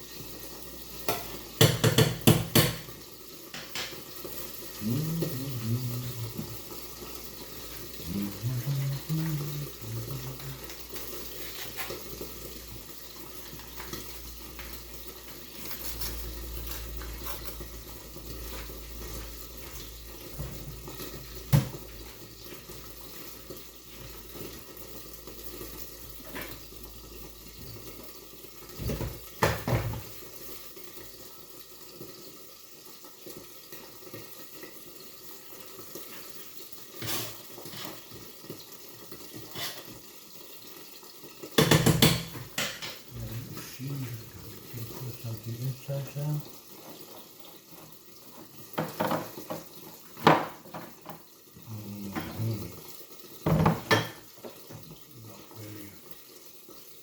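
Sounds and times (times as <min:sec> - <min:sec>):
tap water running: 0:00.0 - 0:57.0
dishes knocking: 0:01.1 - 0:02.9, 0:41.6 - 0:43.0, 0:53.5 - 0:54.2.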